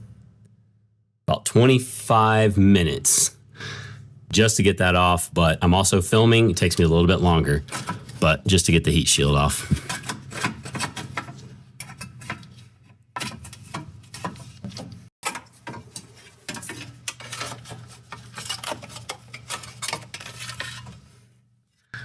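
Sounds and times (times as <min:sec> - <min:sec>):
steady low hum: 0:00.0 - 0:11.6
hand tools clicking and clattering: 0:07.6 - 0:21.0.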